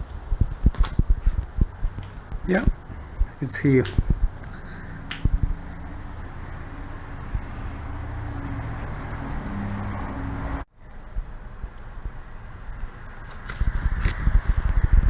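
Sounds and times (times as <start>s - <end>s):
faint background noise: 0.0s - 15.0s
traffic rumble: 0.0s - 15.0s.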